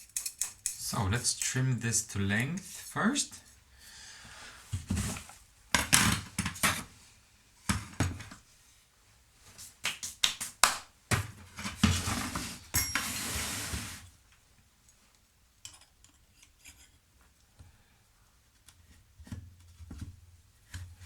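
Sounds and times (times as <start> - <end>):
metallic clinks of tools: 12.7 - 13.2.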